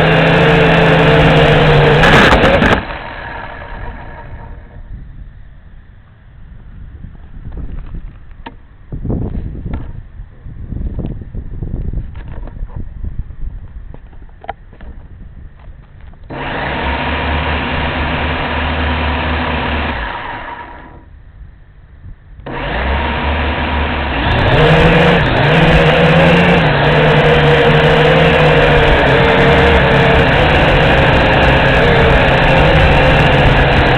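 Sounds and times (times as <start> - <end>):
drone propellers whirring: 0.0 - 6.0, 15.8 - 21.3, 22.3 - 33.9.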